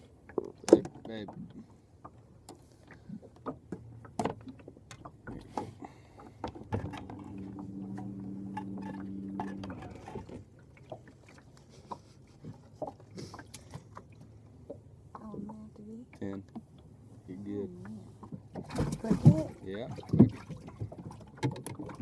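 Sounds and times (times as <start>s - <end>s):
steady low hum: 6.8s - 10.7s.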